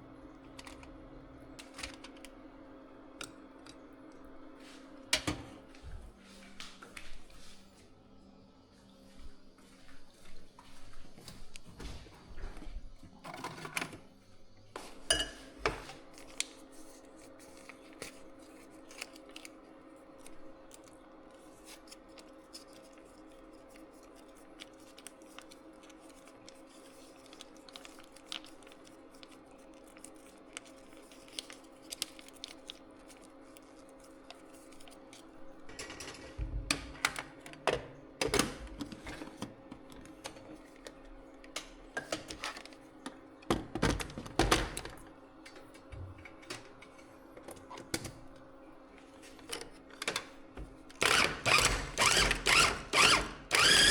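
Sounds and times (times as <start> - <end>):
kitchen appliance hum: 0.0 - 53.9
dishes and utensils clattering: 15.0 - 16.0.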